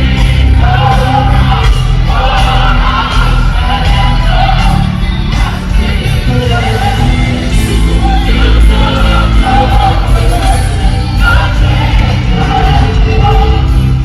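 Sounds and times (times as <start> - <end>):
band with steady bass: 0.0 - 14.0
voices singing gospel: 0.0 - 14.0.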